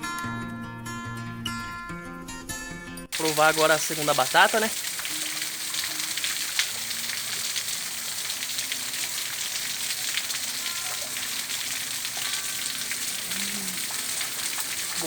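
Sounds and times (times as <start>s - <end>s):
waterfall rushing: 3.2s - 15.0s.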